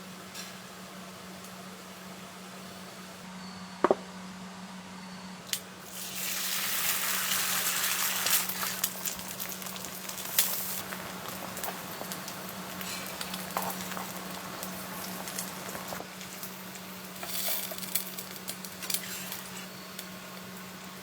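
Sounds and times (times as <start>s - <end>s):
food sizzling and crackling: 5.8s - 21.0s.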